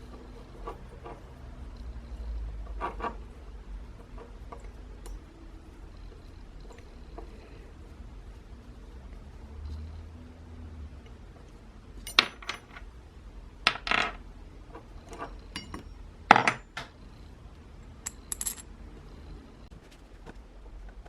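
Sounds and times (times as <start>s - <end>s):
small metal parts clinking: 12.0s - 12.9s, 14.8s - 16.8s, 18.0s - 18.7s.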